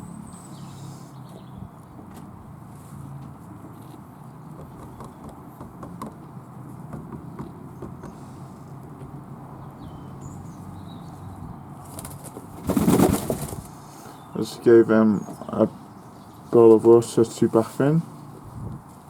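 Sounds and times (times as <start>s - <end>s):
doves tapping and scuffing: 1.2s - 9.4s
loud rustling: 11.9s - 13.7s.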